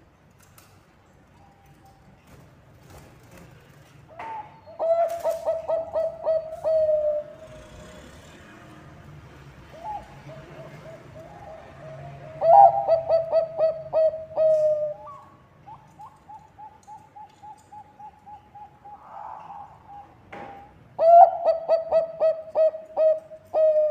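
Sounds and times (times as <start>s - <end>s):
dove cooing: 4.2s - 7.8s, 9.7s - 23.9s.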